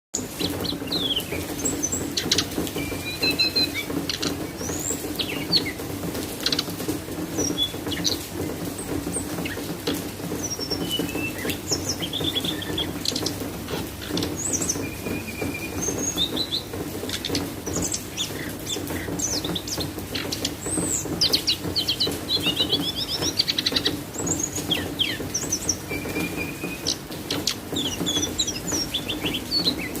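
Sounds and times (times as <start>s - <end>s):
songbird chirping and trilling: 0.2s - 30.0s.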